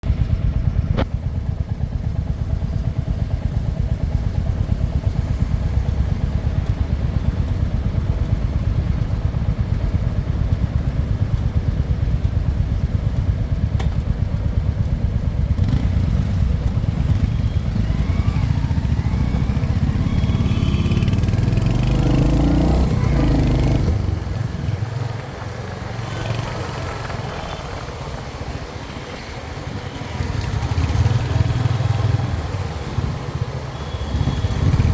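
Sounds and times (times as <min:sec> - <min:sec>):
motorcycle engine running: 0:00.0 - 0:34.9.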